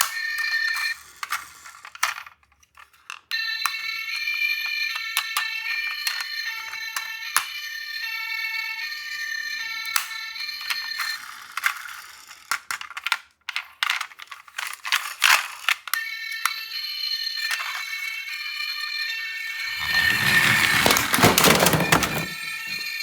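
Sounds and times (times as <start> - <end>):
toy electronic siren: 0.0 - 1.6, 3.3 - 12.0, 15.8 - 19.6
plastic clattering and rattling: 19.8 - 22.8.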